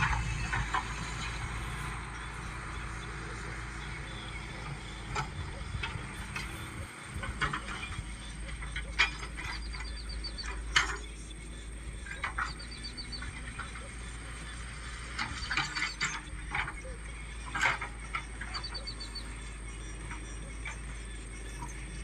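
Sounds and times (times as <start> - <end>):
sharp knocks and clanks: 0.0 - 13.8
excavator engine hum: 0.0 - 22.0
steady high whine: 0.0 - 22.0.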